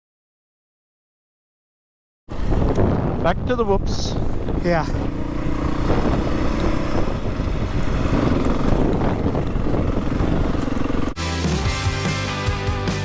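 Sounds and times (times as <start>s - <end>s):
dirt bike engine running hard: 4.2s - 13.0s
rock music: 11.2s - 13.0s.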